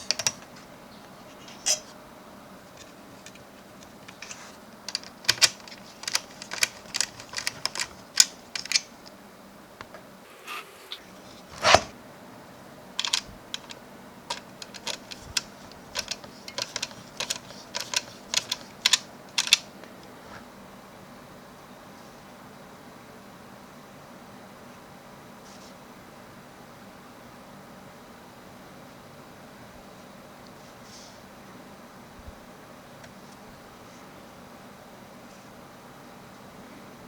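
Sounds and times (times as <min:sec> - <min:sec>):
clicks and taps of hardware: 0:04.1 - 0:08.8.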